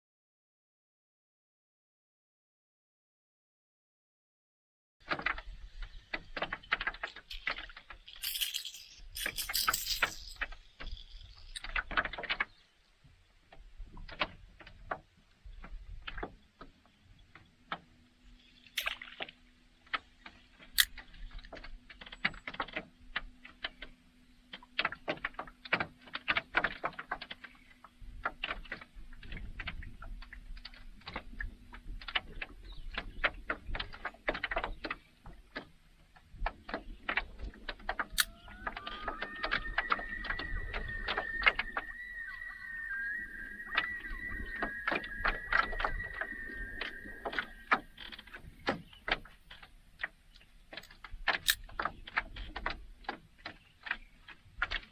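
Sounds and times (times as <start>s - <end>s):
fishing gear rattling and knocking: 6.2s - 12.6s, 18.4s - 27.6s.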